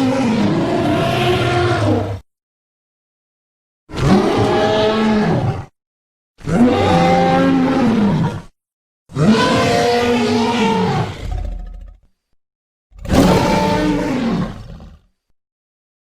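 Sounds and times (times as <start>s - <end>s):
dinosaur roar: 0.0s - 2.2s, 9.2s - 12.1s, 12.9s - 15.1s.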